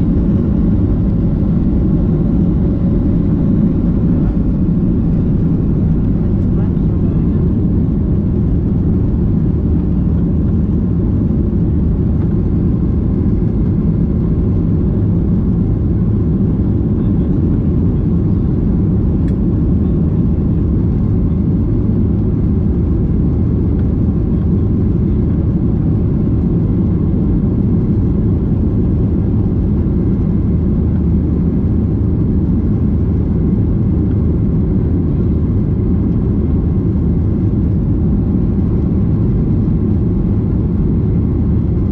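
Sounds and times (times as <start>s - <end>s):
airplane cabin engine rumble: 0.0s - 41.9s.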